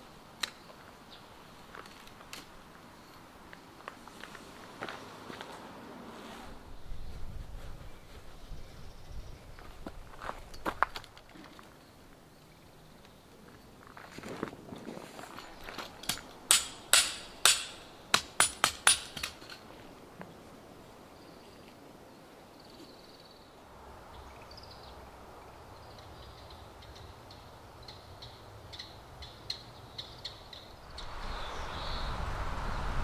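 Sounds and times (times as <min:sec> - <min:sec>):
sharp metallic knocks: 0:16.0 - 0:19.6
wind rushing: 0:30.8 - 0:33.0.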